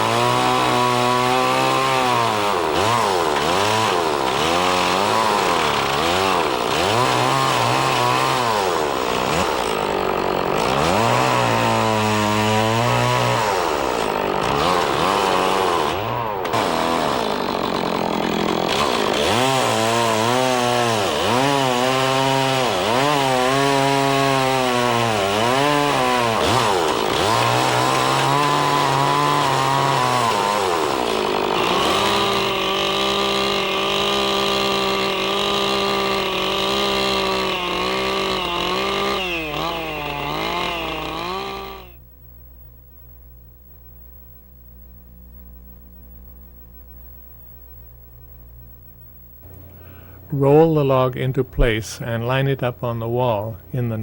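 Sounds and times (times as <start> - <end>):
chainsaw cutting a log: 0.0 - 42.0.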